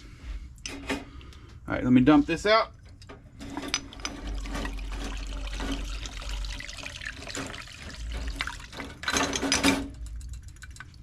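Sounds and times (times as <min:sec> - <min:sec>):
liquid splashing and trickling: 0:02.8 - 0:11.0.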